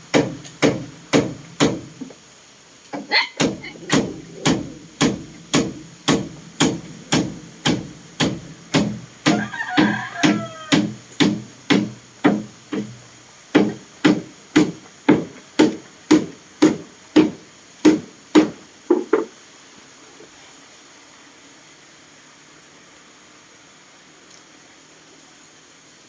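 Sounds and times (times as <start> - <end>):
ringing hammer blows: 3.4 - 13.0.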